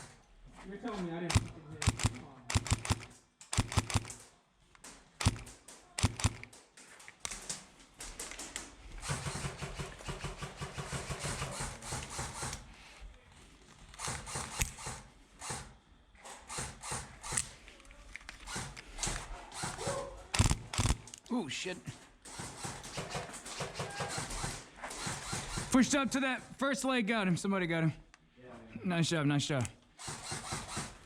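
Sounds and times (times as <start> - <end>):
airsoft gunshots snapping: 1.3 - 4.2, 5.2 - 6.6.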